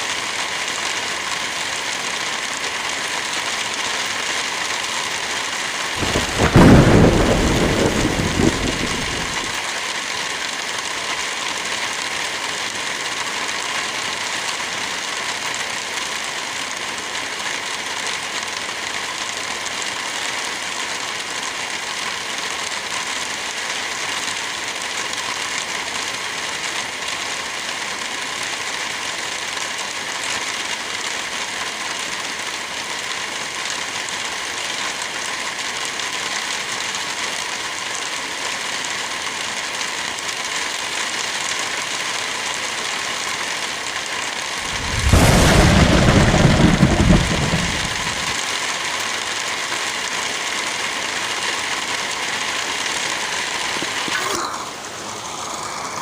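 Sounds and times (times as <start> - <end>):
light rain falling: 0.0 - 56.0
wind blowing through trees: 6.0 - 9.6, 44.6 - 48.4.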